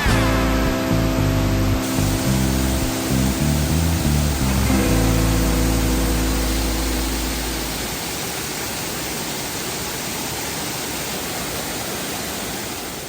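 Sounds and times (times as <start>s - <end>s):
low background music: 0.0s - 7.8s
waterfall roaring: 0.0s - 13.0s.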